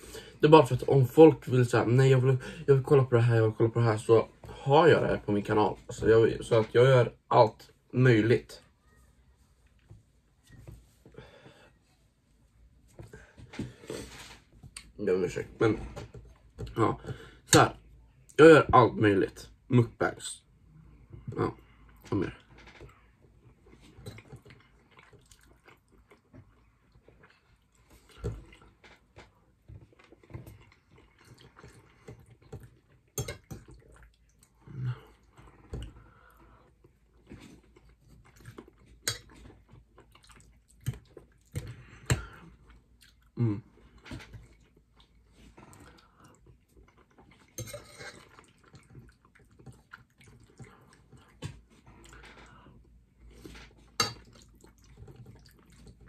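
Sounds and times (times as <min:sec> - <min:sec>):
chewing: 0:20.9 - 0:56.0.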